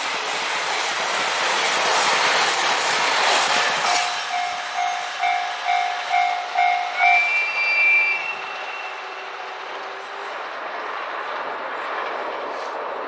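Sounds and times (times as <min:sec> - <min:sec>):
train running noise: 0:00.0 - 0:13.0
train horn high note: 0:03.9 - 0:09.3
level crossing alarm ringing: 0:04.2 - 0:09.0.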